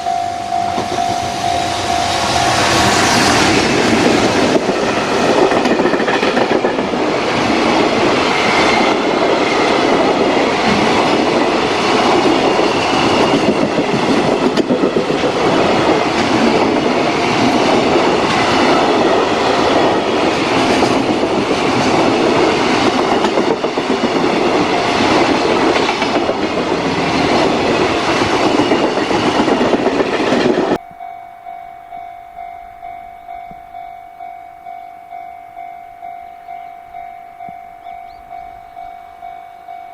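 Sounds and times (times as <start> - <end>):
level-crossing warning bell: 0.0 - 26.4, 30.7 - 39.9
freight train wheels clattering: 0.0 - 30.8.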